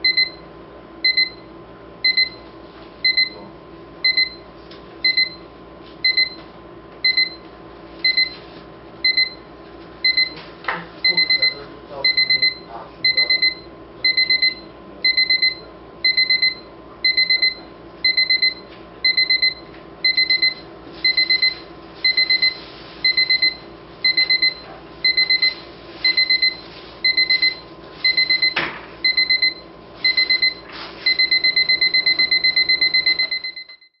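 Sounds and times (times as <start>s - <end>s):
alarm clock beeping: 0.0s - 0.4s, 1.0s - 1.4s, 2.0s - 2.4s, 3.0s - 3.4s, 4.0s - 4.4s, 5.0s - 5.4s, 6.0s - 6.4s, 7.0s - 7.4s, 8.0s - 8.4s, 9.0s - 9.4s, 10.0s - 10.4s, 11.0s - 34.0s.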